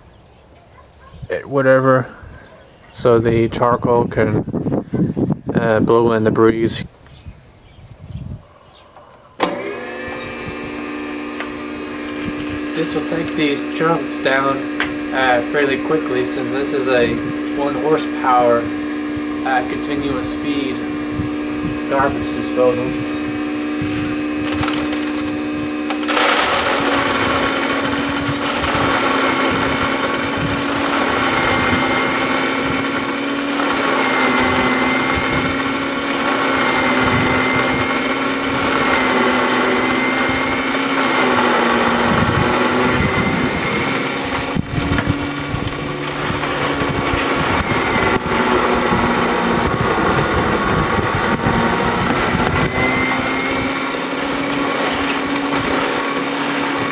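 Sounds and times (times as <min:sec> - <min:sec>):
garbage disposal motor hum: 0:07.0 - 0:56.9
gritty grinding: 0:09.1 - 0:56.9
sharp clicks from chunks: 0:24.4 - 0:26.2.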